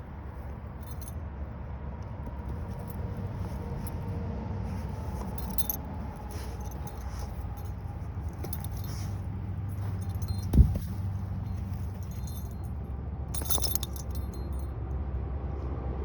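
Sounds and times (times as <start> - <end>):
light metallic jingling: 0.0 - 14.9
steady low rumble: 0.0 - 15.0
short thump: 9.8 - 12.2.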